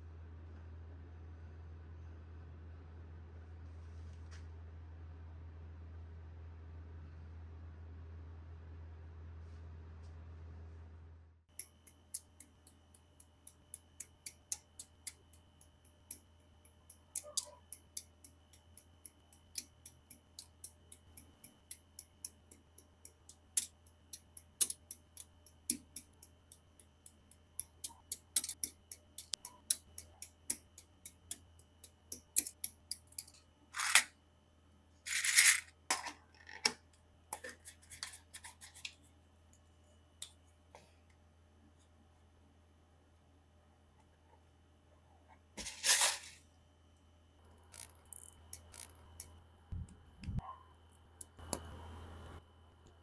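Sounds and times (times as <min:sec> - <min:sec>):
small plastic clicks: 0:47.5 - 0:49.4.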